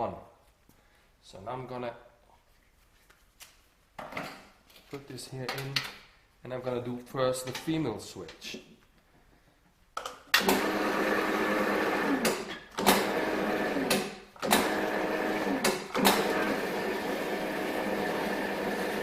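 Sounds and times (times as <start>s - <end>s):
swaging machine motor running: 10.4s - 19.0s.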